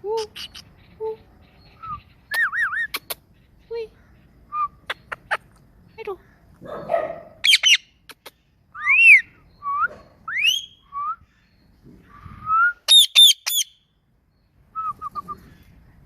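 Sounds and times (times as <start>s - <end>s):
parrot whistling calls: 7.4s - 7.8s, 8.8s - 11.2s, 12.5s - 13.7s.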